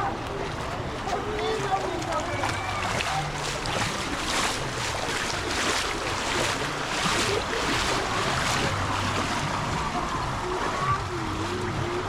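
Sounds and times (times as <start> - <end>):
water rushing and splashing: 0.0 - 12.0.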